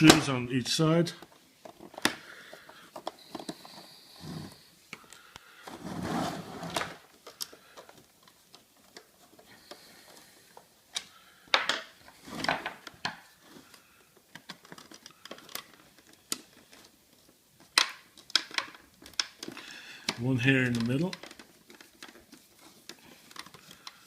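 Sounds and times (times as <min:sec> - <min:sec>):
plastic mechanism clicks and rattles: 0:06.8 - 0:24.0.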